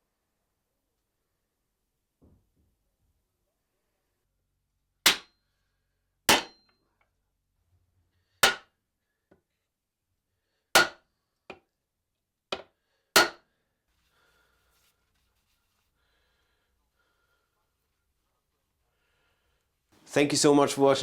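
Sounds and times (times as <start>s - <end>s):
tool striking metal: 5.1s - 5.4s, 6.3s - 6.7s, 8.4s - 8.7s, 10.8s - 11.0s, 13.2s - 13.4s.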